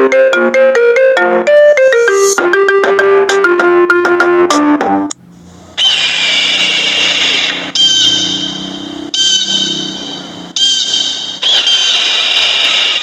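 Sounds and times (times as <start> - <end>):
hissing ringtone with high tone: 1.5 - 2.8.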